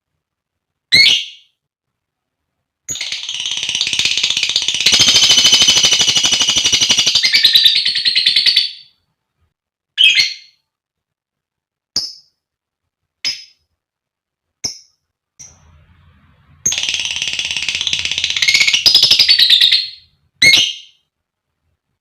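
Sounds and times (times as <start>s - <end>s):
lovebird chattering: 2.9s - 8.8s, 16.6s - 21.0s.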